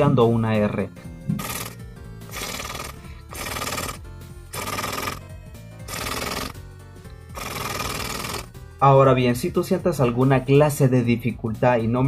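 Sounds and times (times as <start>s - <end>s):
background music: 0.0s - 12.0s
beatbox mouth cymbal: 1.3s - 5.3s, 5.9s - 6.6s, 7.3s - 8.5s.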